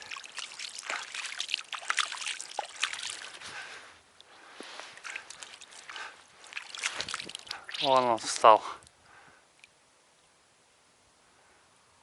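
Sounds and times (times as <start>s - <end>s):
river water splashing: 0.0s - 8.6s.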